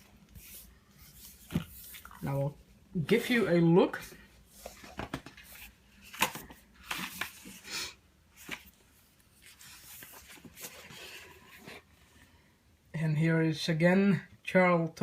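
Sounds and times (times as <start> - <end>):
book pages rustling: 0.0 - 2.5, 3.2 - 7.6, 8.3 - 11.9.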